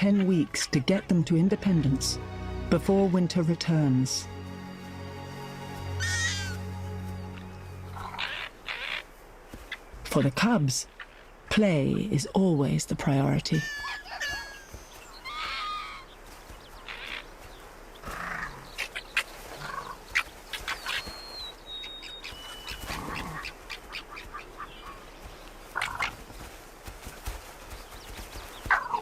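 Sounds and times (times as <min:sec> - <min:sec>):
fox cubs squeaky calls and yips: 0:06.0 - 0:06.7, 0:08.0 - 0:10.1, 0:13.5 - 0:26.5, 0:27.9 - 0:29.0.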